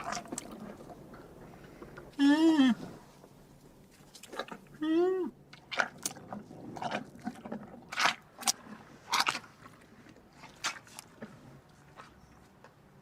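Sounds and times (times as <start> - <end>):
animal chewing and crunching: 0.0 - 2.0, 5.6 - 12.7.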